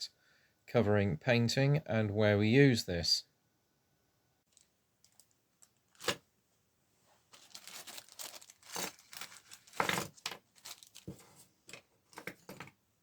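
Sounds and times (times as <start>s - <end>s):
packaging crinkling and rustling: 4.5s - 6.3s, 7.2s - 12.6s.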